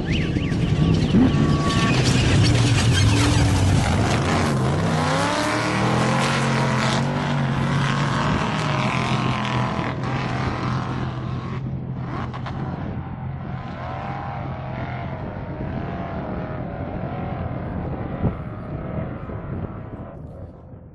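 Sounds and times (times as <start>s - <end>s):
race vehicle engine revving past: 0.7s - 12.9s.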